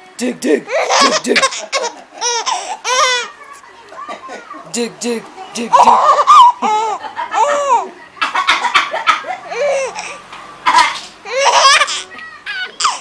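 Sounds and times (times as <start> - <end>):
baby laughing: 0.6 - 3.4, 5.5 - 13.0.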